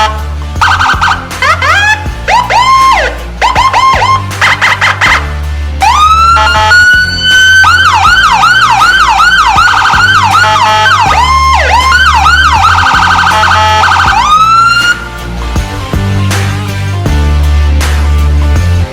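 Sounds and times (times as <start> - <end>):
electronic siren wailing and yelping: 0.0 - 15.1.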